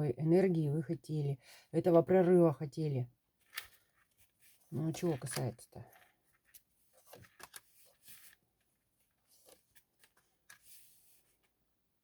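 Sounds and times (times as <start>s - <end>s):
cards rustling and clicking: 3.4s - 11.6s.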